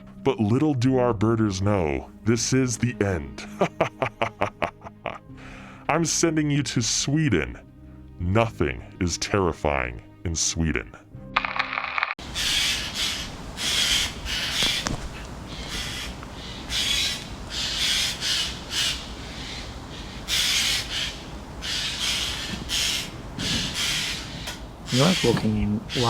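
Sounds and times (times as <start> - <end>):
jay screeching: 16.7 - 26.0.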